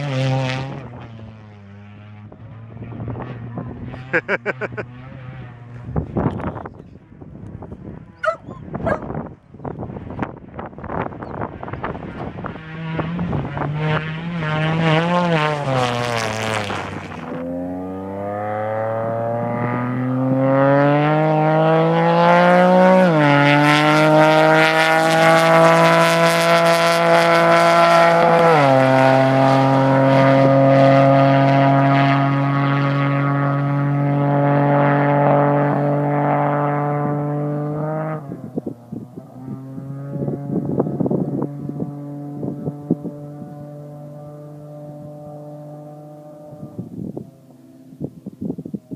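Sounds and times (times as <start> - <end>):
race vehicle engine accelerating: 0.0 - 48.9.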